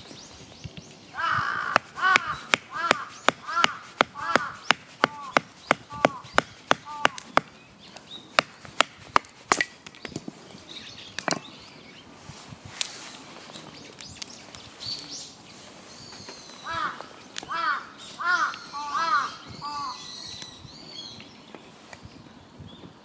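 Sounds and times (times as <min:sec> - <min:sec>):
crows cawing: 0:01.1 - 0:07.3, 0:16.6 - 0:20.1.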